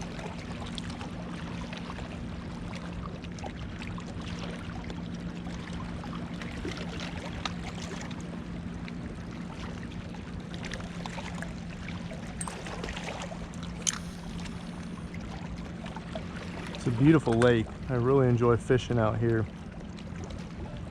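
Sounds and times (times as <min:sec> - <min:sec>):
steady low hum: 0:00.0 - 0:20.9
water lapping and splashing: 0:00.0 - 0:20.9
sharp click: 0:13.8 - 0:14.2.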